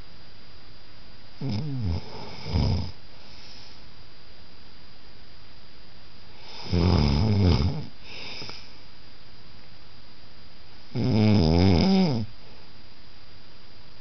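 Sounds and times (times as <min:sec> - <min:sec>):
steady background hiss: 0:00.0 - 0:14.0
person snoring: 0:01.4 - 0:03.0, 0:06.4 - 0:08.6, 0:10.9 - 0:12.3.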